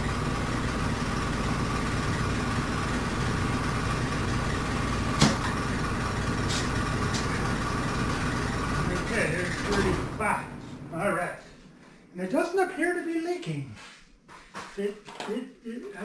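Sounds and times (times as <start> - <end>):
air compressor running: 0.0 - 11.0.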